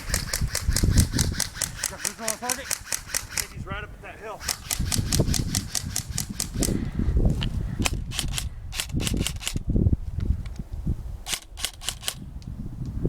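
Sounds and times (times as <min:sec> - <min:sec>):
airsoft guns firing: 0:00.0 - 0:03.6, 0:04.4 - 0:06.8.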